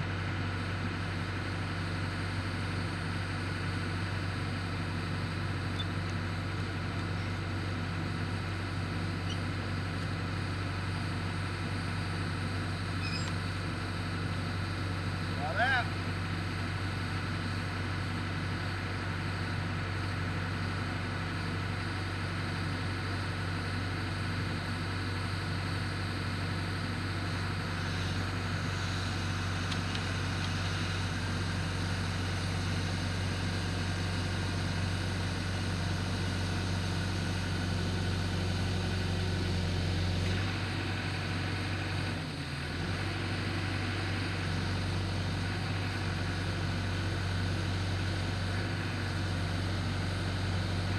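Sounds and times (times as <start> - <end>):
engine running steadily: 0.0 - 50.9.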